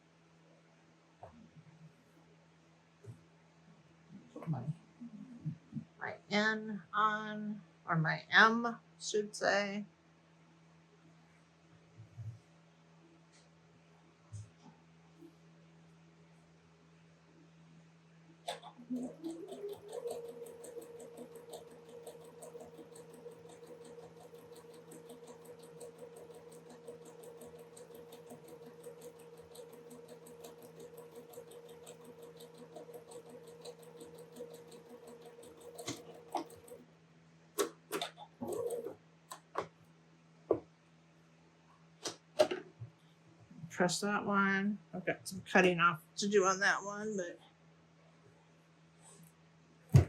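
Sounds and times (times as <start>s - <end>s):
sewing machine stitching: 18.5s - 36.8s, 37.6s - 39.5s.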